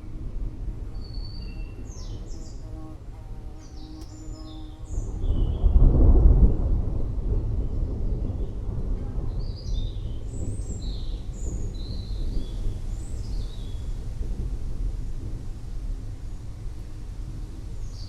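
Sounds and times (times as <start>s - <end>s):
distant thunder rumbling: 0.0s - 18.0s
bird chirping: 1.0s - 5.8s.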